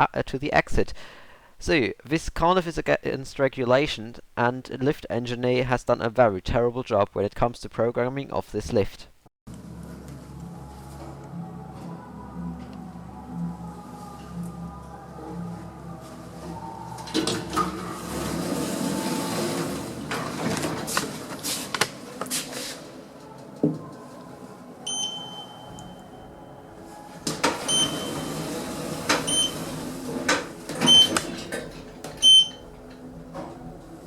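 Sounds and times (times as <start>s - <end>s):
lift keypad beeping: 24.9s - 26.7s, 27.4s - 29.8s, 30.8s - 31.4s, 32.2s - 32.7s.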